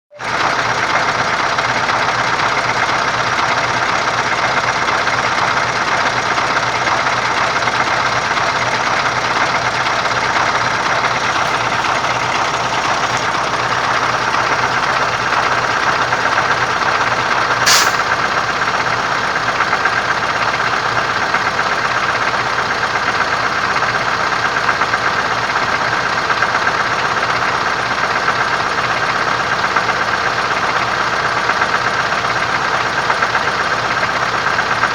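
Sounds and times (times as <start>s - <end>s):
truck engine idling: 0.1s - 34.9s
rapid gearbox knocking: 0.4s - 16.9s
sharp click: 17.7s - 18.1s.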